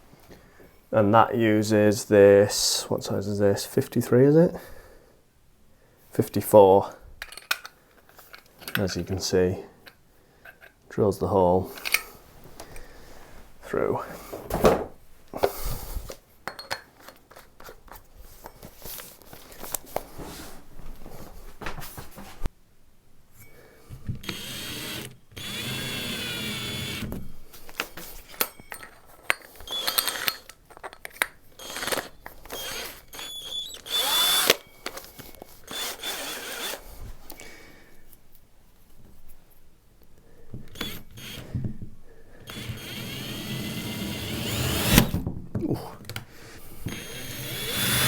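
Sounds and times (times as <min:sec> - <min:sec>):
power drill boring through door: 0:24.2 - 0:27.2, 0:29.7 - 0:30.4, 0:31.6 - 0:34.7, 0:35.7 - 0:36.8, 0:40.7 - 0:41.6, 0:42.4 - 0:45.2, 0:46.9 - 0:48.0.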